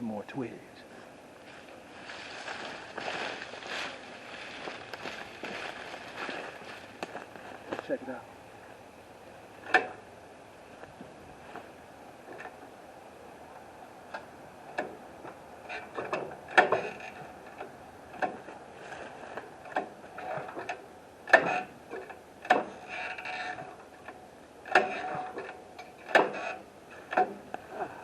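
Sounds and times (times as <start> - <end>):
brush rustling: 0.8 - 8.8, 10.6 - 12.7, 16.8 - 20.6
branches cracking: 1.4 - 7.9.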